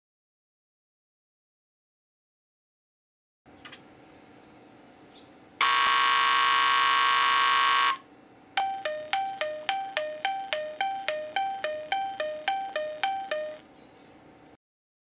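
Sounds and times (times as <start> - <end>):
alternating two-tone warning bell: 5.6 - 8.0, 8.6 - 13.6
synthesized train horn: 5.6 - 8.1.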